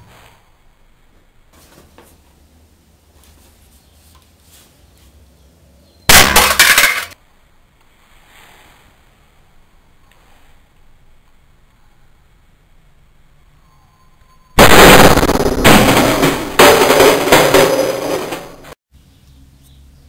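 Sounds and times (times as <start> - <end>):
glass shattering: 6.1 - 7.2.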